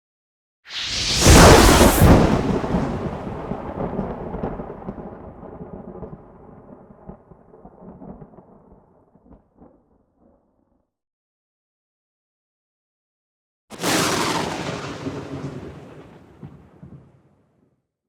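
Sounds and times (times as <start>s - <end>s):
thunder crack and rumble: 1.0s - 9.8s, 13.7s - 17.3s.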